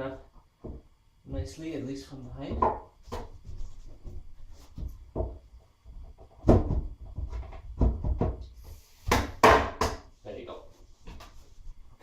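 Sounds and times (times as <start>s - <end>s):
wooden bed frame pieces knocking: 2.5s - 3.4s, 4.8s - 8.4s, 9.1s - 10.1s.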